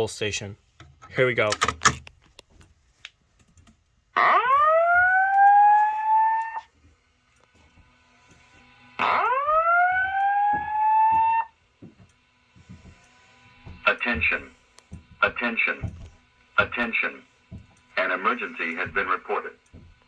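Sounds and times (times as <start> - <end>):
fire alarm whoop tone: 4.2 - 6.7, 9.0 - 11.6.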